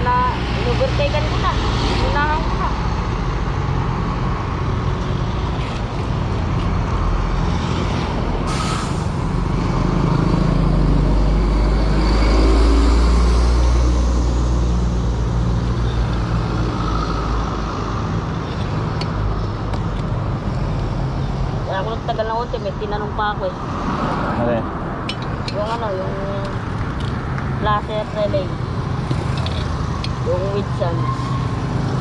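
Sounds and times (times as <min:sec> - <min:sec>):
vehicle engine rumble: 0:00.0 - 0:32.0.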